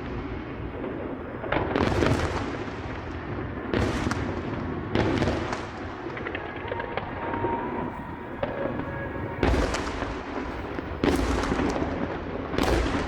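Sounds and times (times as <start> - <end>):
continuous rumble: 0.0 - 13.0
fireworks booming: 0.0 - 13.0.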